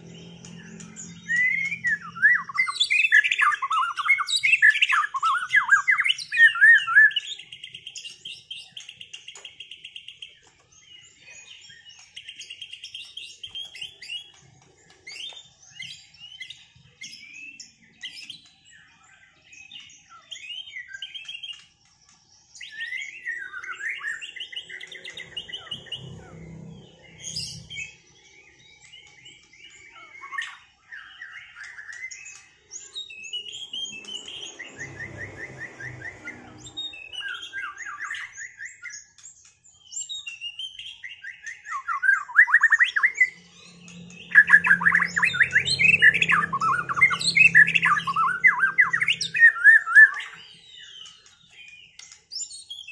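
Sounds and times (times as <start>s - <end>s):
bird singing whistles and trills: 0.0s - 52.9s.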